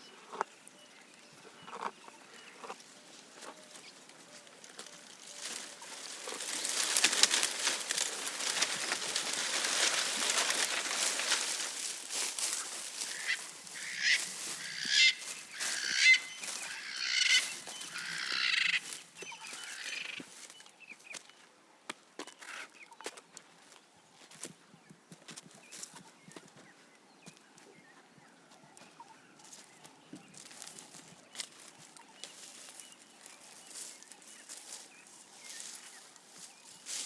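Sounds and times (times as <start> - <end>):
giraffe rustling leaves and twigs: 2.8 - 20.7, 30.4 - 37.0
bird honking calls: 13.0 - 20.2.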